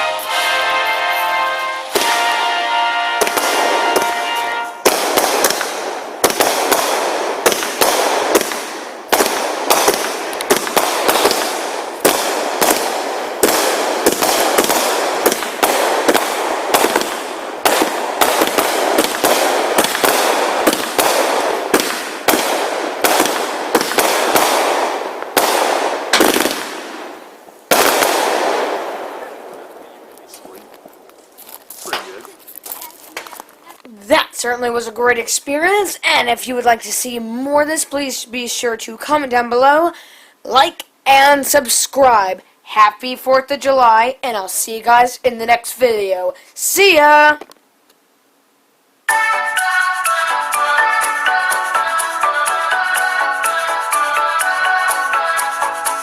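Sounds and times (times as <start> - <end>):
firework shells bursting: 0.0 - 33.6
fireworks crackling: 0.0 - 42.4, 49.1 - 56.0.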